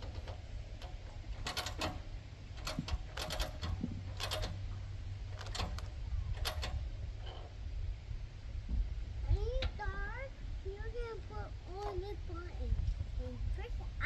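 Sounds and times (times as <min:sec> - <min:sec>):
sharp clicks and knocks: 0:00.0 - 0:07.6
low steady hum: 0:00.0 - 0:14.0.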